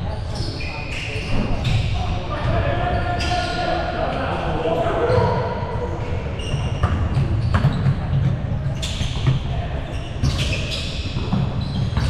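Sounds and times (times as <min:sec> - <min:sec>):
basketball bouncing on court: 0:06.4 - 0:09.4.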